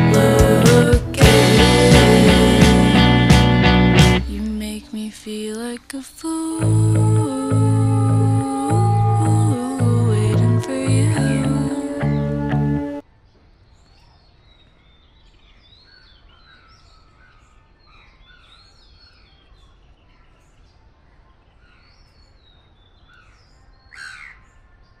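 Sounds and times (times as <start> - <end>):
songbirds chirping: 6.6 - 25.0.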